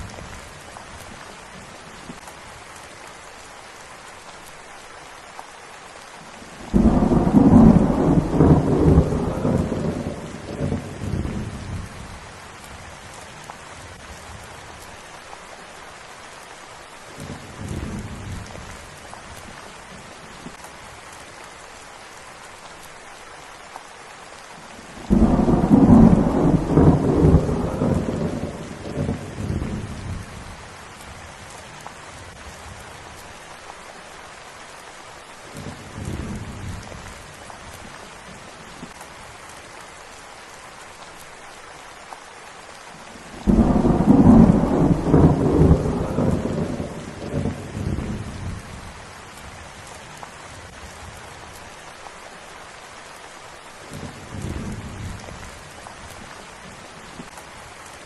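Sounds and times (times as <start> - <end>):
steady rain: 0.0 - 58.0
thunder rumbling: 6.6 - 12.2, 25.0 - 30.6, 43.4 - 49.0.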